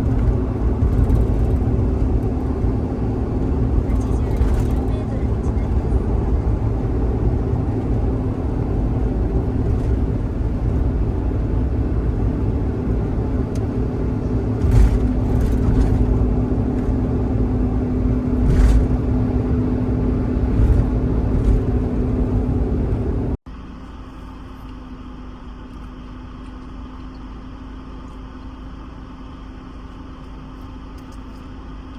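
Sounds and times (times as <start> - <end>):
car road and engine rumble: 0.0 - 31.9
short thumps: 13.2 - 17.2.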